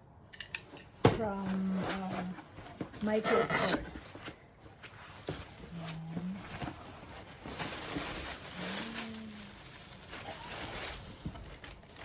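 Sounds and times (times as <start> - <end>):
plastic packaging rustling: 1.2 - 12.0.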